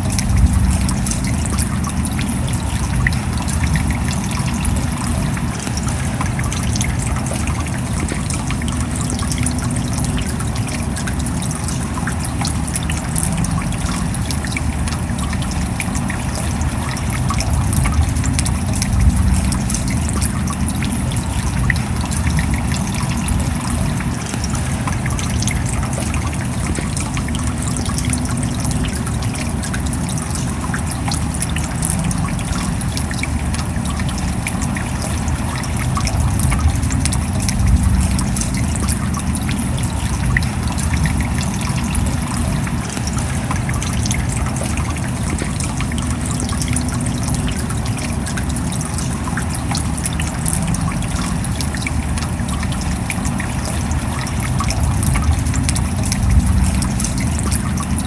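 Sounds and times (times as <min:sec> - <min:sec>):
rain drops pattering: 0:00.0 - 0:58.0
rain water wash: 0:00.0 - 0:58.0.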